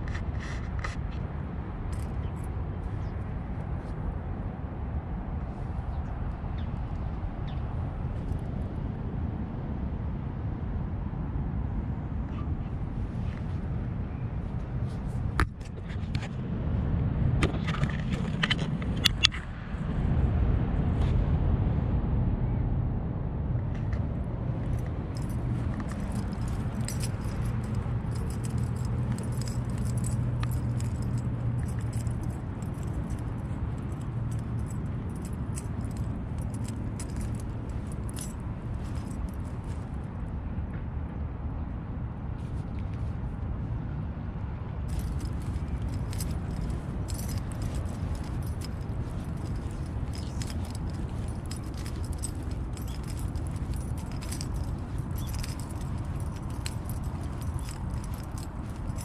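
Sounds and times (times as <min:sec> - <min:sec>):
road traffic rumble: 0:00.0 - 0:59.0
metallic jingling and clicking: 0:24.6 - 0:40.1, 0:44.9 - 0:59.0.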